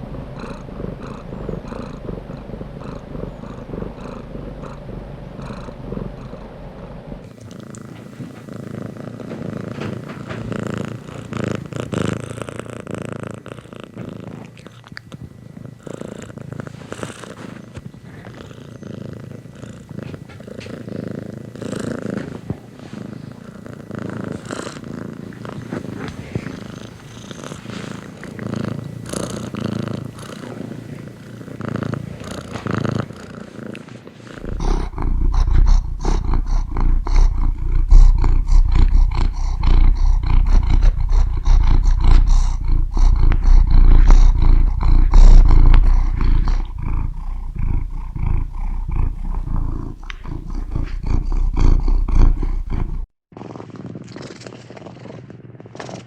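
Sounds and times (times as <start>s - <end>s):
deep pulsing rumble: 0.0s - 7.3s, 34.4s - 53.1s
cat purring: 0.0s - 56.0s.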